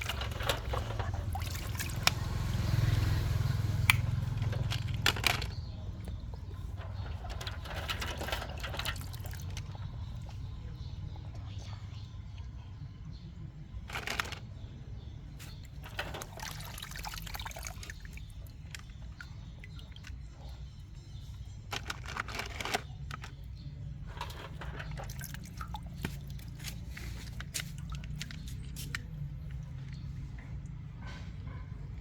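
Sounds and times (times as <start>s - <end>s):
small clicks and clatters: 0.0s - 2.4s, 3.9s - 9.9s, 13.9s - 14.5s, 17.8s - 30.1s.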